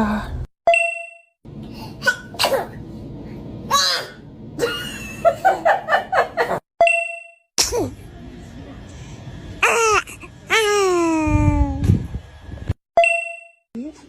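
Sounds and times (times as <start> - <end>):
baby sneezing: 2.0 - 2.8, 9.6 - 10.8.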